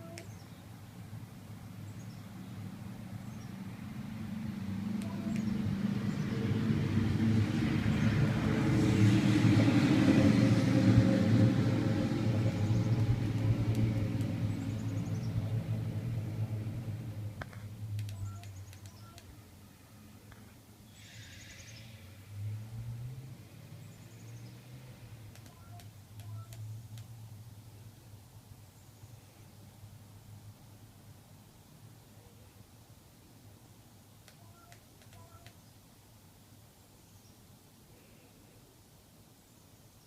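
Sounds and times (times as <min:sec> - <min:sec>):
vehicle driving past: 0:02.0 - 0:18.6, 0:20.9 - 0:25.7.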